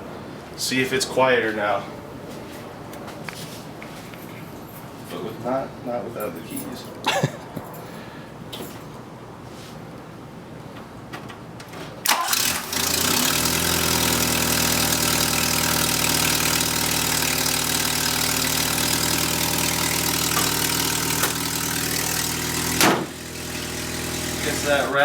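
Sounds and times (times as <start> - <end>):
car engine cranking and idling: 12.0 - 25.0.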